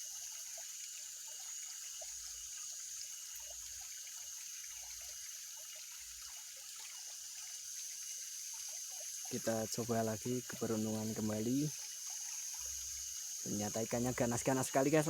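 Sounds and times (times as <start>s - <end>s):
water drips: 0.0s - 15.0s
water trickling: 0.0s - 15.0s
high-pitched hiss: 9.3s - 15.0s.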